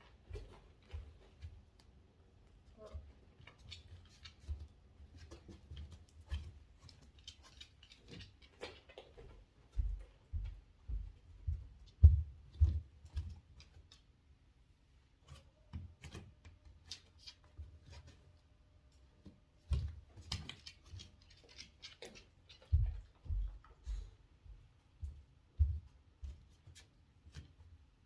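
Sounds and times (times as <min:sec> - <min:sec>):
footsteps on indoor floor: 0:08.4 - 0:13.4, 0:21.0 - 0:27.6
dog claws clicking: 0:19.8 - 0:22.8.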